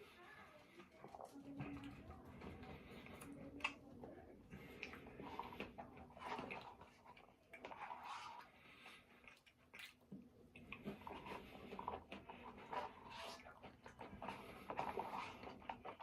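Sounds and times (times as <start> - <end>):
person chewing: 4.5 - 16.0.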